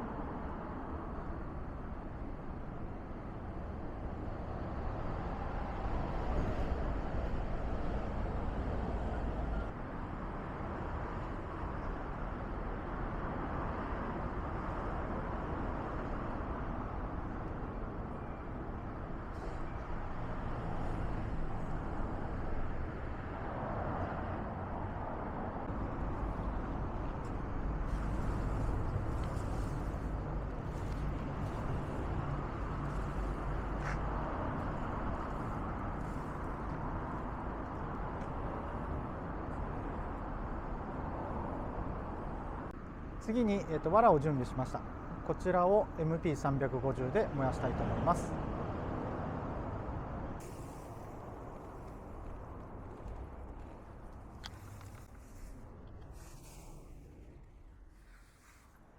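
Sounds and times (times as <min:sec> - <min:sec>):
fire rushing and rumbling: 0:18.7 - 0:40.5, 0:48.6 - 0:58.9
faint crackles: 0:50.4 - 0:58.9.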